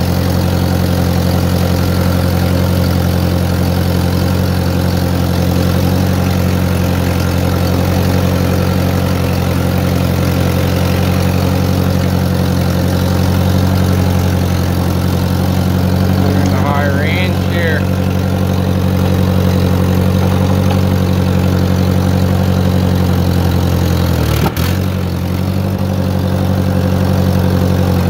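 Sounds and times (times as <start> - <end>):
tractor engine idling: 0.0 - 28.0.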